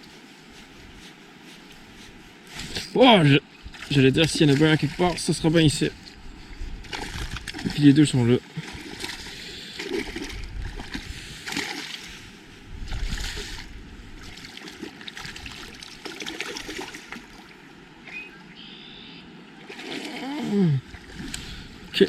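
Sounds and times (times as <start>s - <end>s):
water splashing against boat: 3.6s - 6.2s, 6.8s - 12.2s, 12.8s - 17.6s.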